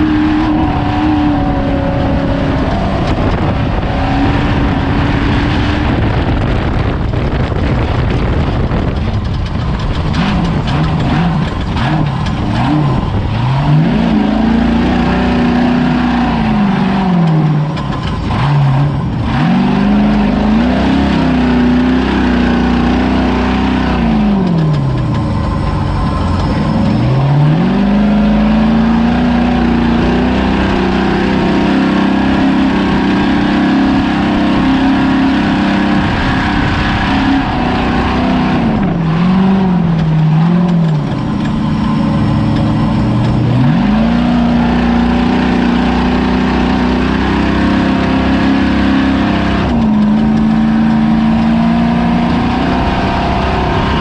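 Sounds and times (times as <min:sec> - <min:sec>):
loud rushing noise: 0:00.0 - 0:17.2
truck engine revving: 0:00.0 - 0:54.0.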